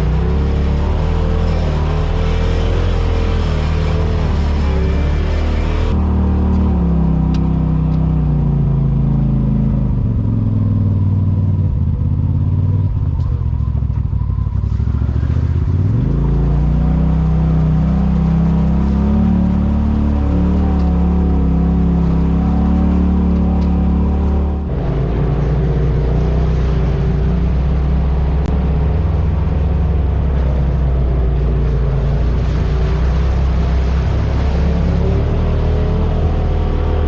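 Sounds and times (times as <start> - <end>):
utility vehicle engine revving: 0.0 - 37.0.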